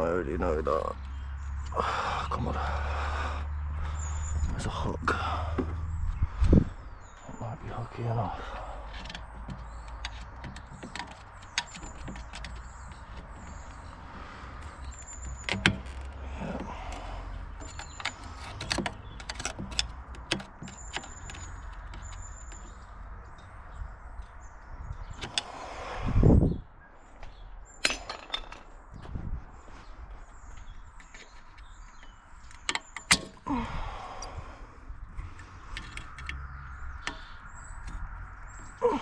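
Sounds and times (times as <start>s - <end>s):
tools clicking and rattling: 8.4s - 23.5s, 27.8s - 28.8s, 31.0s - 33.5s, 35.2s - 38.2s.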